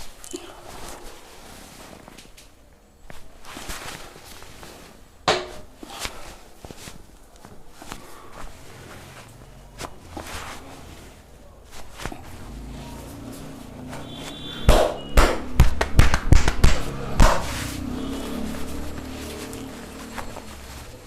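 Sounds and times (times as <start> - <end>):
soft handling sounds: 0.0 - 14.6, 16.8 - 21.0
hands slapping body: 14.6 - 17.7.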